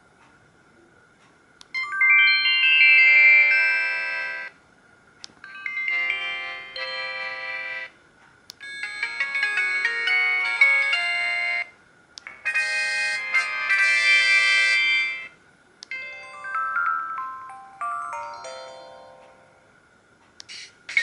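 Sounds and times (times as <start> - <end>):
phone ringtone melodies: 1.8 - 4.5, 5.4 - 7.9, 8.6 - 11.7, 12.3 - 15.3, 15.9 - 19.7.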